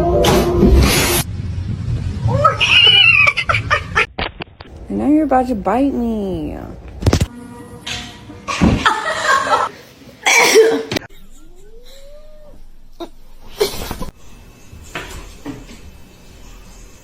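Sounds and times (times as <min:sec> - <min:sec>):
cat calling harshly: 0:02.3 - 0:03.6.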